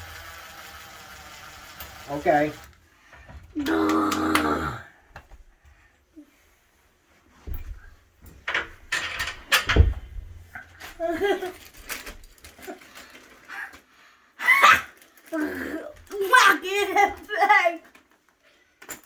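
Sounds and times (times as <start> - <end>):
cordless impact driver: 0.0 - 2.8
voice sounds: 3.6 - 4.9.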